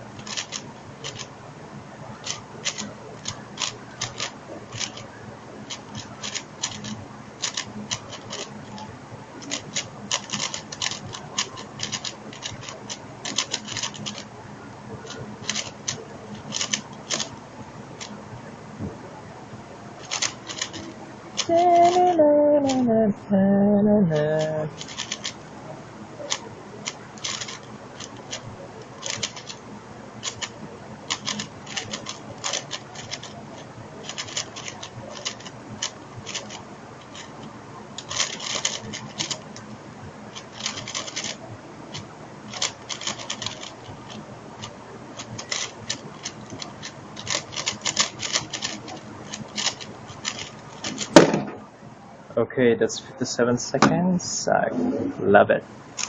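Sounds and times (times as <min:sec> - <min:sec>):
plastic puzzle cube clicking: 0:00.2 - 0:01.3, 0:02.2 - 0:05.1, 0:05.7 - 0:08.8, 0:09.4 - 0:14.2, 0:15.1 - 0:17.3, 0:24.2 - 0:25.4, 0:26.3 - 0:29.6, 0:30.2 - 0:30.5, 0:31.1 - 0:33.4, 0:34.0 - 0:37.3, 0:38.0 - 0:39.4, 0:42.0 - 0:43.8, 0:45.2 - 0:51.3
sharp knock: 0:51.2 - 0:51.6.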